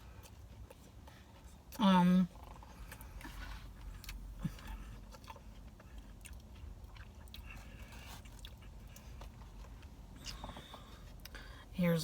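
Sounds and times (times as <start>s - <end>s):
person chewing crunchy food: 0.0s - 11.5s.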